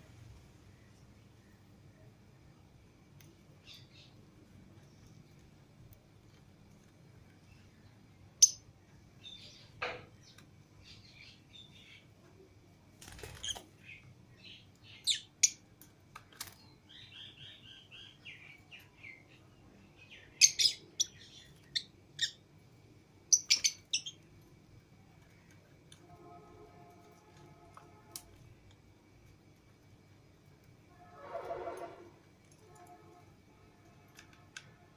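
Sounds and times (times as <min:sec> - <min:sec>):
lovebirds chirping: 0:13.2 - 0:15.6, 0:16.9 - 0:22.4, 0:23.3 - 0:24.2.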